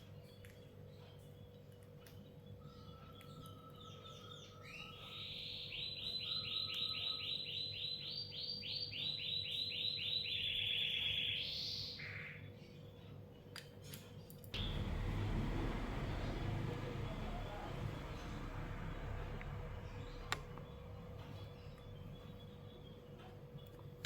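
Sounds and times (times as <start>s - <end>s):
lovebird chirping: 2.2s - 12.7s.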